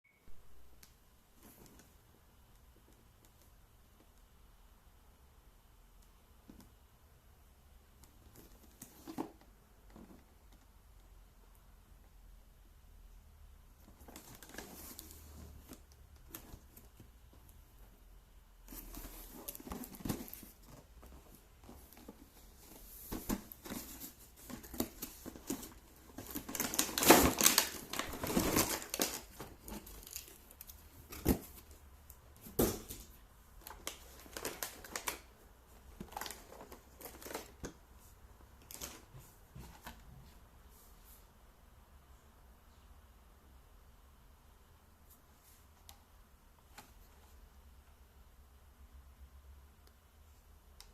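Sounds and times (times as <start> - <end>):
plastic and cardboard crinkling: 8.0 - 10.6, 13.7 - 18.0, 18.6 - 31.8, 32.4 - 37.8, 38.6 - 40.0.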